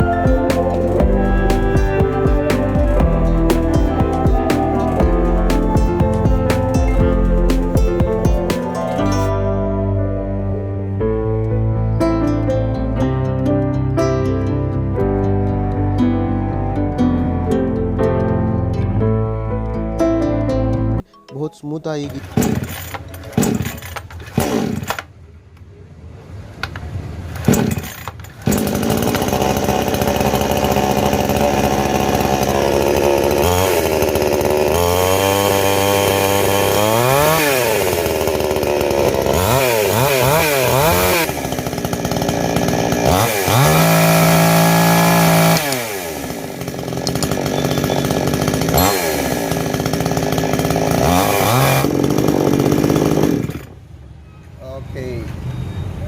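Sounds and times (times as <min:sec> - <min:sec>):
chainsaw starting and revving: 0:00.0 - 0:09.3, 0:22.2 - 0:25.0, 0:27.4 - 0:53.8.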